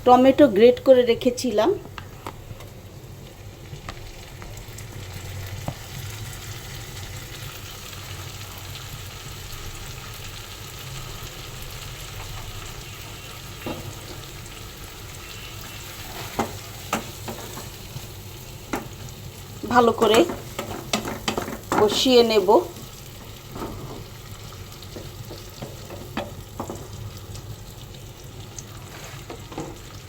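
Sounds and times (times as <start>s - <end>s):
onions sizzling in oil: 0.0s - 30.0s
spatula scraping a pan: 15.1s - 18.0s, 19.9s - 24.3s, 28.8s - 29.9s.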